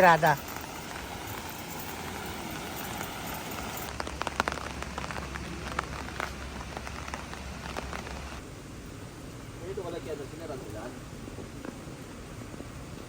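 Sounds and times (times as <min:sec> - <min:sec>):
sharp raindrop taps: 0:00.0 - 0:08.4
rain falling: 0:00.0 - 0:13.0.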